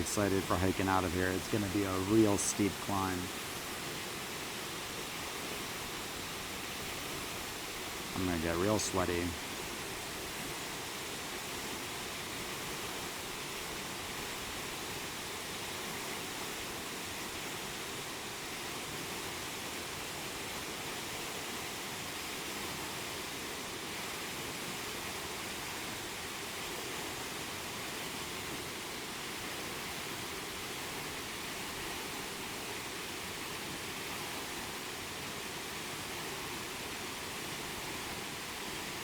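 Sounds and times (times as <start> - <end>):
waterfall rushing: 0.0 - 15.8.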